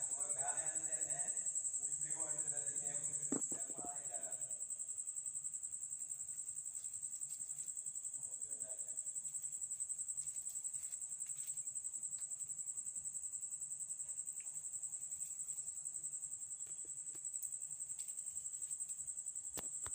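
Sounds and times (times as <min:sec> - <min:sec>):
insects trilling: 0:00.0 - 0:19.9.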